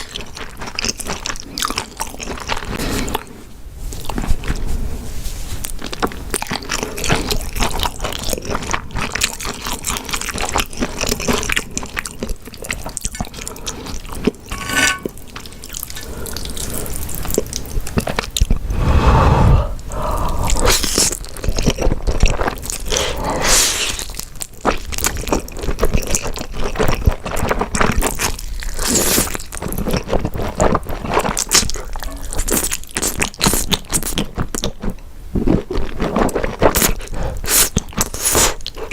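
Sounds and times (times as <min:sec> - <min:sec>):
wet chewing and smacking: 0:00.0 - 0:03.3, 0:05.6 - 0:14.5, 0:20.2 - 0:23.2, 0:23.9 - 0:38.9
slurping food: 0:18.6 - 0:21.7, 0:22.3 - 0:24.2.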